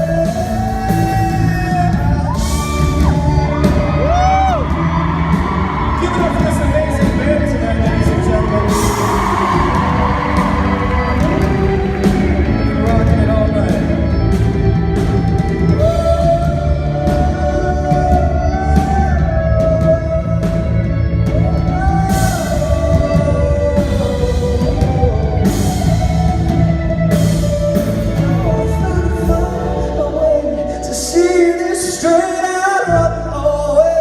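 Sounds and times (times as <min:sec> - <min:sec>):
live rock band playing: 0:00.0 - 0:34.0
person singing long wavering notes: 0:07.0 - 0:34.0.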